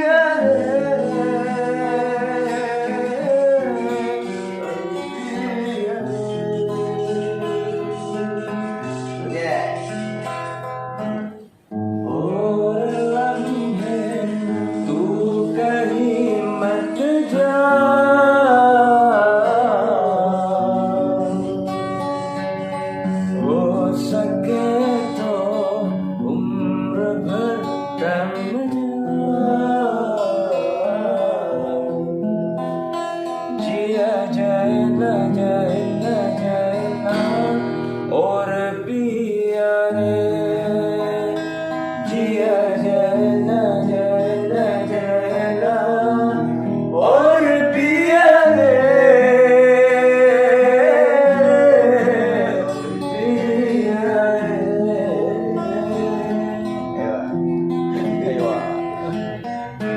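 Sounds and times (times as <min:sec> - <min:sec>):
person singing devotional song: 0:00.0 - 0:08.0, 0:12.1 - 0:21.6
strummed acoustic guitar: 0:00.0 - 0:59.9.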